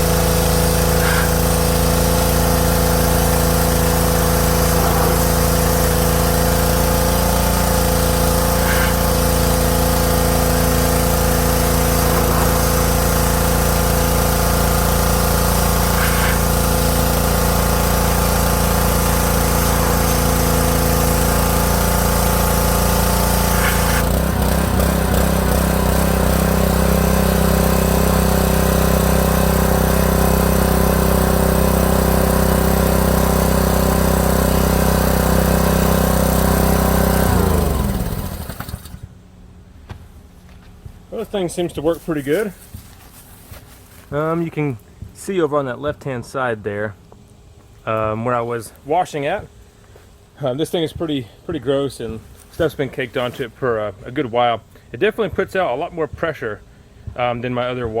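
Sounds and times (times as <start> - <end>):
pressure washer engine running: 0.0 - 39.2.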